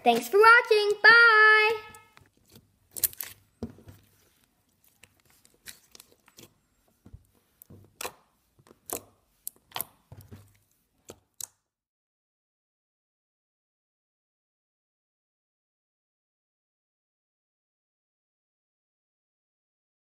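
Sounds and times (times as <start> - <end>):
slime wet clicks and pops: 8.8 - 10.0.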